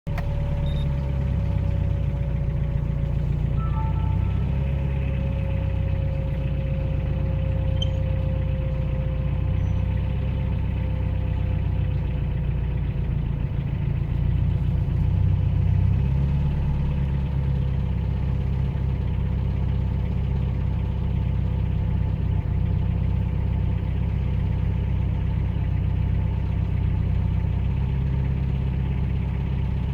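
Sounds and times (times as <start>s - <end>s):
car engine idling: 0.0s - 29.9s
fuel pump whine: 0.1s - 20.1s.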